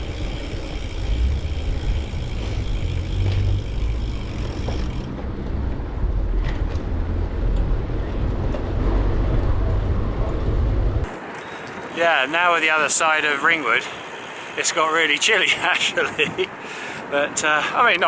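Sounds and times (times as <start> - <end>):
wind buffeting microphone: 0.0 - 12.0
bicycle tyres rolling: 0.0 - 18.0.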